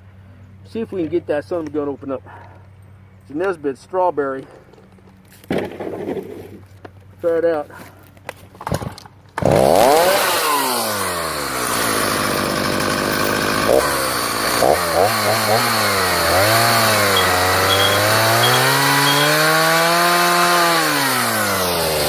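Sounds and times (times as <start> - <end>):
chainsaw revving: 9.4 - 22.0.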